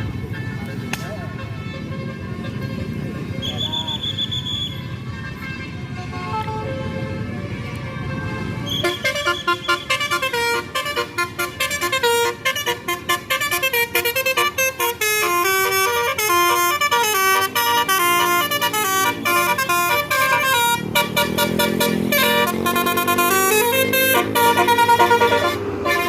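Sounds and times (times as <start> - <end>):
bus musical horn melody: 0.0 - 26.0
low engine note: 8.6 - 26.0.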